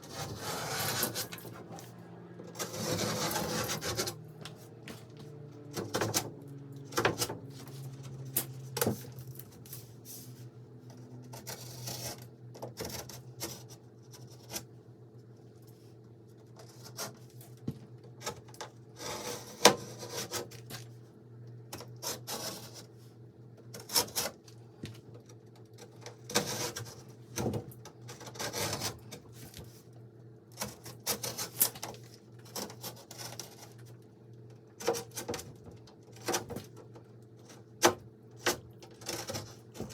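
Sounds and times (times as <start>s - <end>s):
scraping and rubbing strokes: 0.0s - 6.3s, 6.9s - 12.3s
steady low hum: 0.0s - 39.9s.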